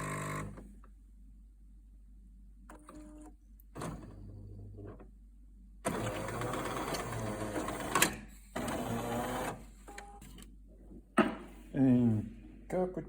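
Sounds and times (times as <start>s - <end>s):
coffee machine buzzing: 0.0s - 0.7s, 8.6s - 9.6s.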